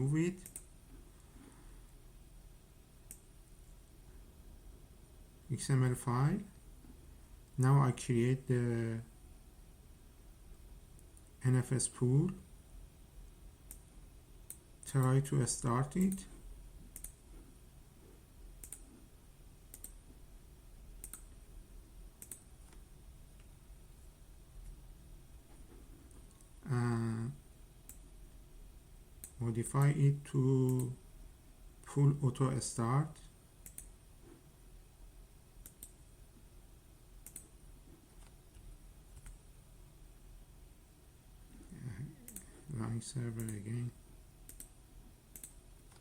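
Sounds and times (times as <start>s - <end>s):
low steady hum: 0.0s - 46.0s
computer keyboard clicks: 17.0s - 17.2s, 19.7s - 20.0s, 21.0s - 21.3s, 22.2s - 22.4s, 37.2s - 37.5s, 44.5s - 44.7s, 45.3s - 46.0s.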